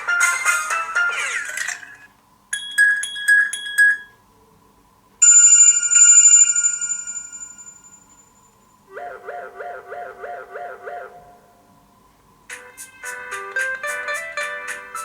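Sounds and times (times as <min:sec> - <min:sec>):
bell-like chime: 0:05.2 - 0:08.6.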